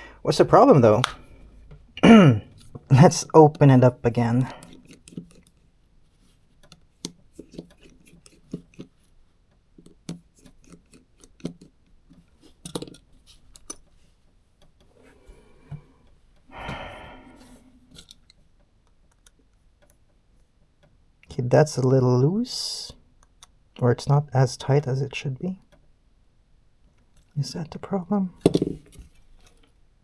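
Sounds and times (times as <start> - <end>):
small clicks and taps of tools: 6.5 - 15.0, 17.9 - 21.3.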